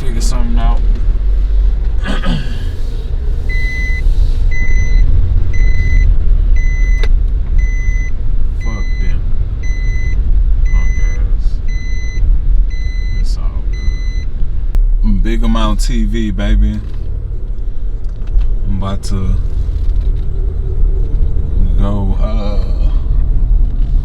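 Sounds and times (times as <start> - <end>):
car engine: 0.0 - 24.0
road rumble: 0.0 - 24.0
electronic warning chime beeping: 3.5 - 5.0, 5.6 - 7.0, 7.6 - 14.2.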